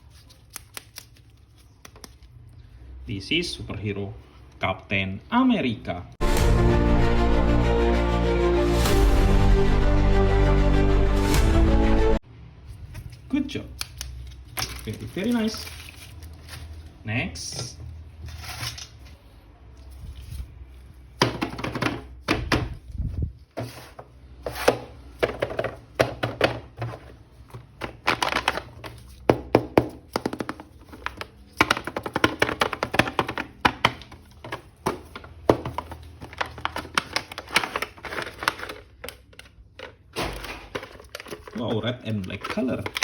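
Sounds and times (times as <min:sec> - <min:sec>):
plastic toys clicking and tapping: 0:27.7 - 0:40.1.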